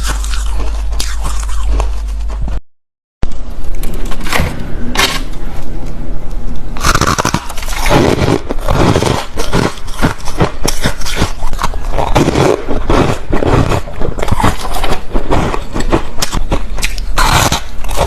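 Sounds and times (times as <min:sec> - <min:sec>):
ice being bitten and crunched: 0:00.0 - 0:02.3, 0:06.8 - 0:18.0.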